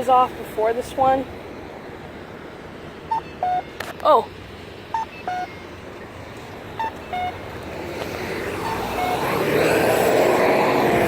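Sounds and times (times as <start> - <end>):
passing vehicle road noise: 0.0 - 11.0
two-note pedestrian signal beeps: 3.1 - 3.8, 4.9 - 6.1, 6.7 - 7.4, 8.6 - 9.3.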